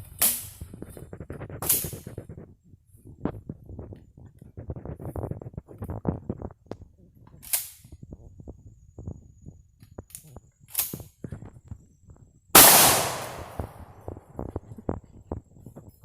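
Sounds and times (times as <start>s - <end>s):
shotgun blast: 12.6s - 13.9s.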